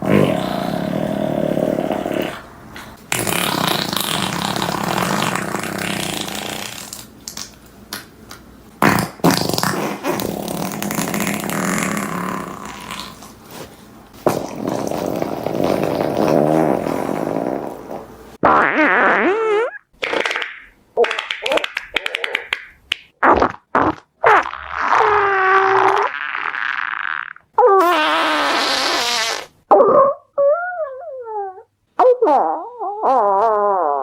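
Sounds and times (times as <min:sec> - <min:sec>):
farts: 0:00.0 - 0:02.4, 0:03.1 - 0:07.1, 0:08.8 - 0:13.3, 0:14.2 - 0:20.6, 0:23.2 - 0:29.8, 0:32.0 - 0:34.0.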